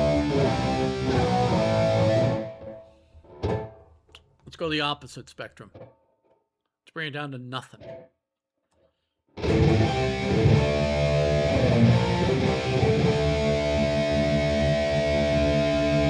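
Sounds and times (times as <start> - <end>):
electric guitar strummed chords: 0.0 - 2.8, 9.4 - 16.0.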